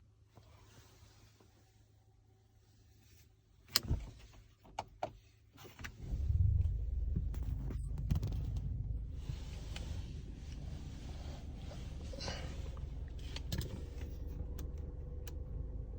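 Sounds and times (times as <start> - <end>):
car engine starting and idling: 5.8 - 15.9.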